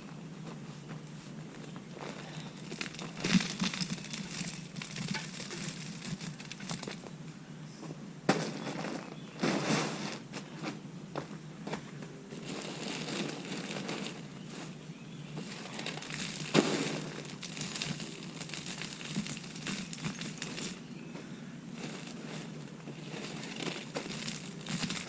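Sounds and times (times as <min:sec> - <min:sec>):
mulch crunching and rustling: 0:01.5 - 0:07.1, 0:12.3 - 0:25.0.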